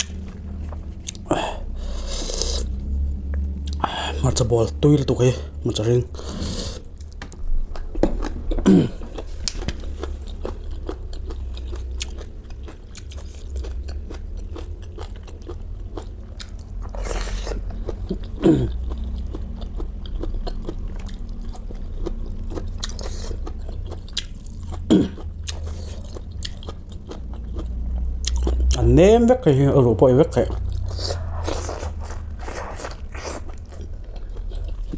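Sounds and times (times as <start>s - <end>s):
chewing and crunching food: 0.0s - 34.9s
low falling mouth sounds: 7.7s - 9.9s
breathy rush: 30.8s - 34.4s.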